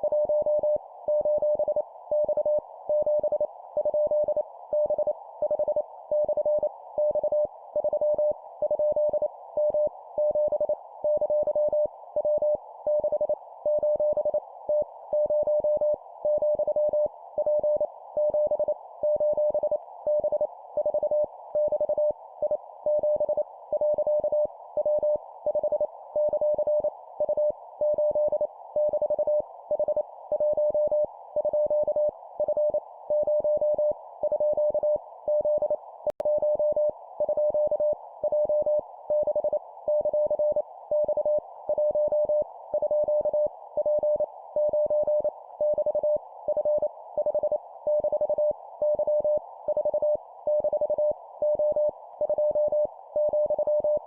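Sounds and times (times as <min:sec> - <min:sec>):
morse code beeps: 0:22.9 - 0:54.0.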